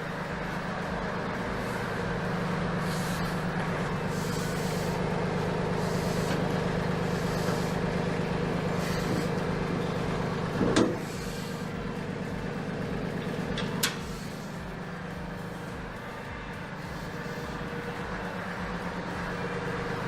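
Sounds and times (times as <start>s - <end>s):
diesel tractor engine running: 0.0s - 20.0s
loud metallic clunk: 10.6s - 11.2s.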